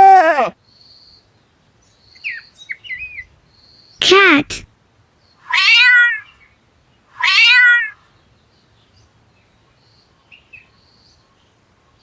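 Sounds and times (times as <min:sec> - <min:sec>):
cat meowing: 0:00.0 - 0:00.5, 0:05.5 - 0:06.3, 0:07.2 - 0:08.0.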